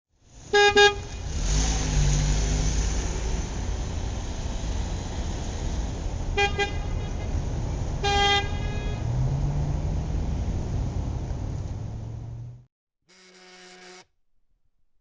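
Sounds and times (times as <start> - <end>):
road traffic engine rumble: 0.2 - 12.7
car horns honking: 13.1 - 14.1.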